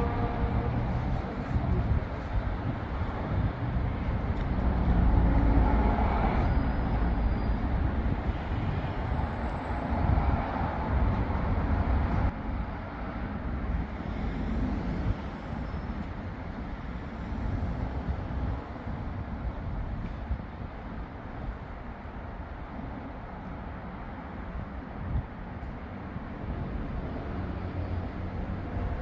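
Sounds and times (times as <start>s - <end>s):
cars passing: 0.0s - 19.2s.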